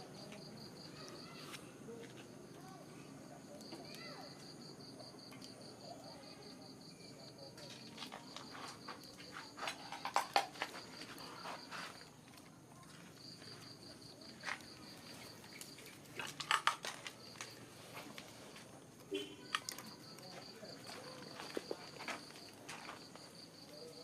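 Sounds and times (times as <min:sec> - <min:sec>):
insects chirring trill: 0:03.3 - 0:17.8
clicks and rustles: 0:07.6 - 0:23.8.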